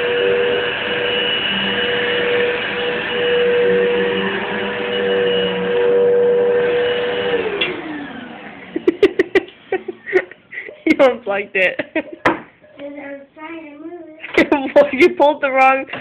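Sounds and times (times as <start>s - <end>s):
vacuum cleaner motor whining: 0.0s - 9.0s.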